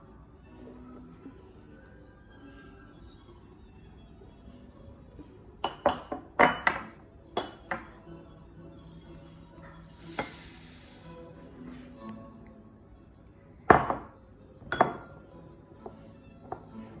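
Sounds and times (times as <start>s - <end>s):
utensils clinking against a bowl: 8.8s - 11.9s
high rustling hiss: 8.8s - 12.0s.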